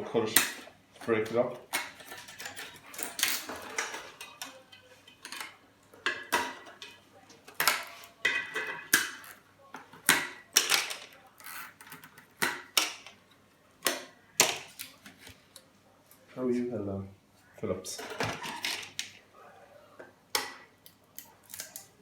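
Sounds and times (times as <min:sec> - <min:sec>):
metal parts clanking: 0:00.4 - 0:09.2.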